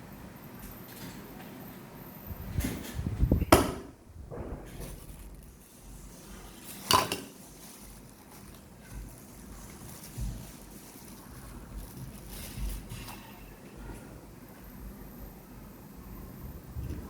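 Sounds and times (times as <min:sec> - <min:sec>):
pots and utensils clattering: 0:06.6 - 0:07.8.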